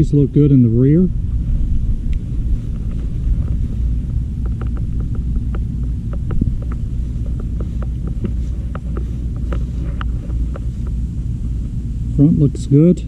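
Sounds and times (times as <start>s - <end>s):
wind buffeting microphone: 0.0s - 12.2s
small clicks and taps: 4.4s - 11.0s.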